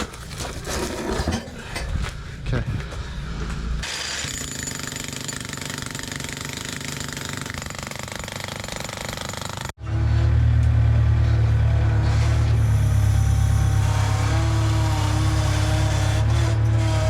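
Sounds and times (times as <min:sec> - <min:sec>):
jackhammer breaking concrete: 0:03.8 - 0:09.7
engine running: 0:09.8 - 0:17.0.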